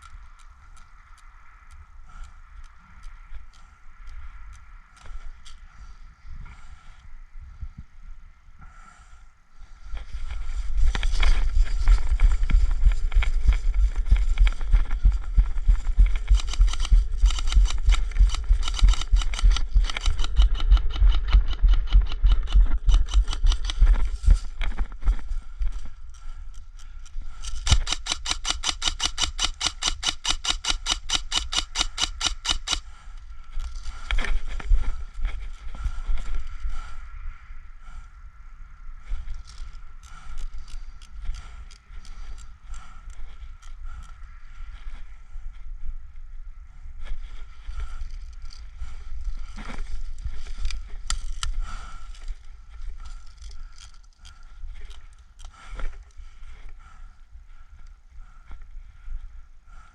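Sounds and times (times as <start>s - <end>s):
rumbling against microphone: 9.6s - 27.7s
airsoft rifle firing full-auto: 27.7s - 32.8s.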